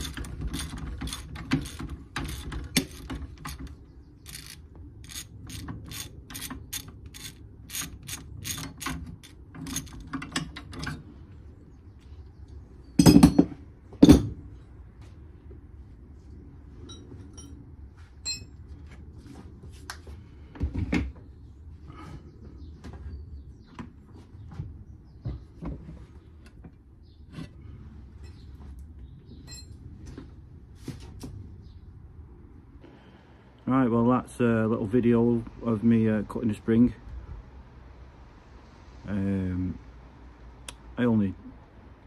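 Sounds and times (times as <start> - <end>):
hand ratchet clicking: 0.0 - 3.7, 4.3 - 10.1.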